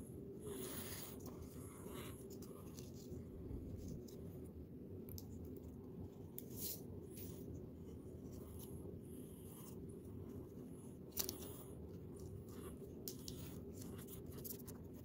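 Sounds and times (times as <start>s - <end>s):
scratching and clicks of laptop parts: 11.0s - 15.0s.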